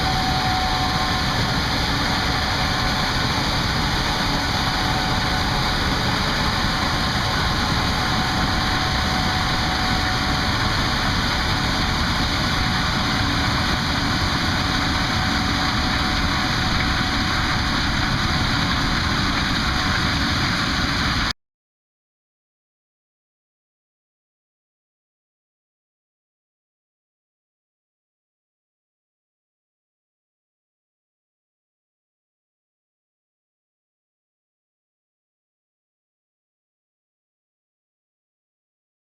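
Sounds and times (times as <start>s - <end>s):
combine harvester running: 0.0s - 21.3s
steady machine whine: 0.0s - 21.3s.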